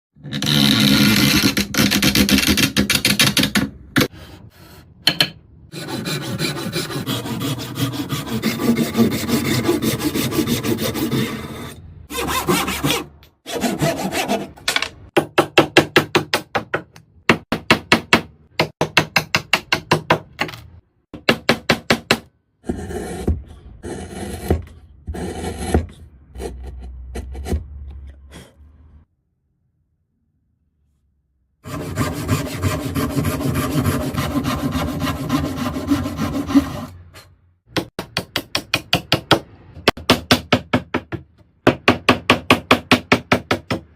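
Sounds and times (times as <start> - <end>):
hand tool sawing wood: 5.8 - 14.6, 31.7 - 36.9.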